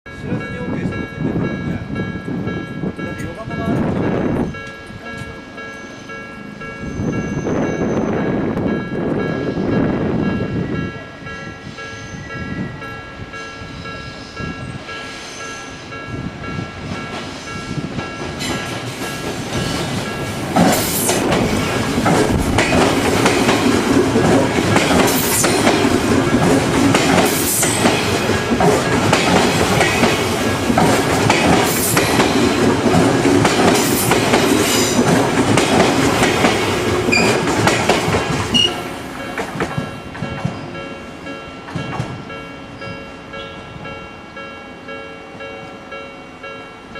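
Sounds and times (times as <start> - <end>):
wind buffeting microphone: 0.1 - 5.5, 6.7 - 15.0, 15.8 - 40.8
train wheels clicking over rail joints: 16.5 - 40.9, 41.6 - 43.0.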